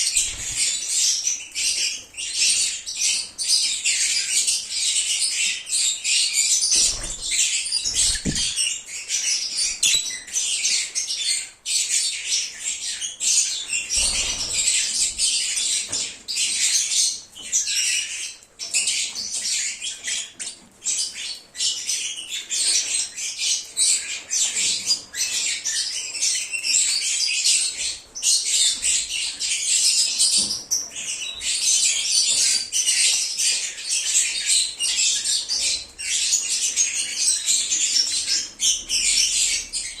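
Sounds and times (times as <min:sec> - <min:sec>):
lovebirds chattering: 0:00.0 - 0:10.9.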